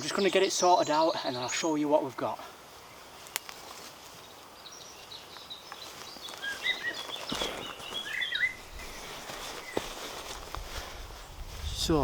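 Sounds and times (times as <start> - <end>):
rustling: 2.5 - 4.6, 5.2 - 12.0
small bird chirping: 2.8 - 10.0.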